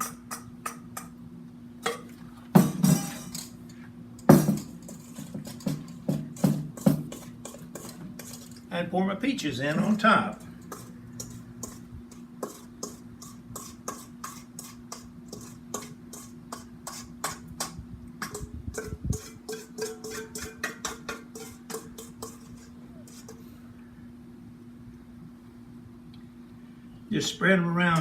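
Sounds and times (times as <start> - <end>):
steady low hum: 0.0 - 28.0
metal utensil scraping metal pot: 4.4 - 8.7, 9.5 - 23.5.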